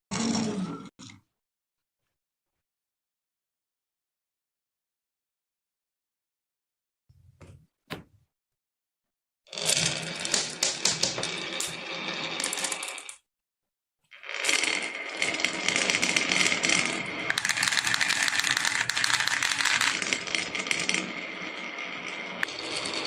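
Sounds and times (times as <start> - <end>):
marbles clattering down track: 9.5 - 13.2, 14.2 - 23.0.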